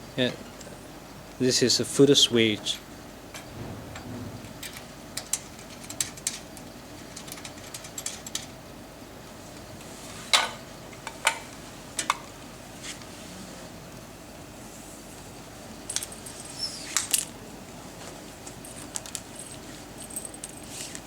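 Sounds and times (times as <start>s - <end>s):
louder knocks: 3.4s - 5.5s.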